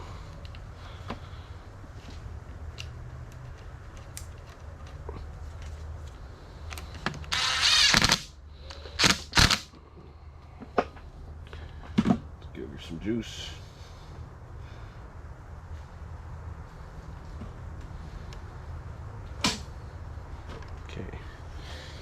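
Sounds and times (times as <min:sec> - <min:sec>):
loud rasping noise: 0:07.3 - 0:09.7.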